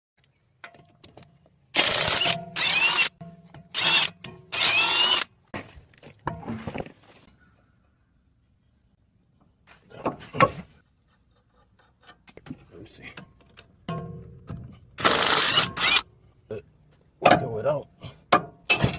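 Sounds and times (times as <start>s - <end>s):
power tool whining: 1.8s - 3.1s, 3.8s - 5.3s.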